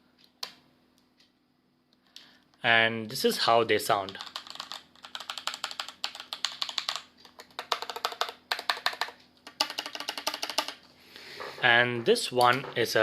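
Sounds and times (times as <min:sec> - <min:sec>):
mechanical keyboard typing: 0:04.0 - 0:10.8.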